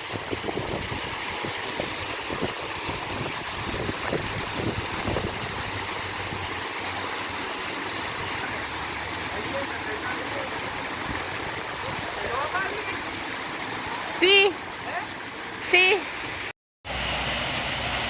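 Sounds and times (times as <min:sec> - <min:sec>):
small waterfall rushing: 0:00.0 - 0:18.0.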